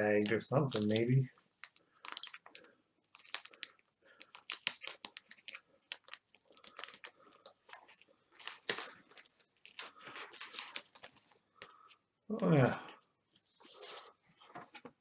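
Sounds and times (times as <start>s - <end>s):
plastic bag crinkling: 0.0s - 11.4s.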